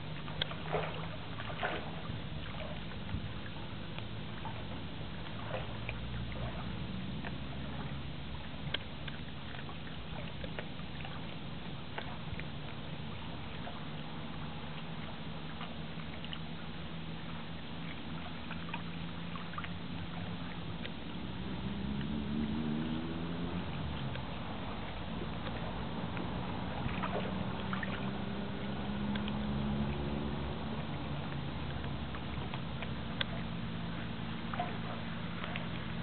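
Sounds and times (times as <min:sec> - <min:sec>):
water: 0:00.0 - 0:36.0
faint clicks: 0:29.1 - 0:29.4.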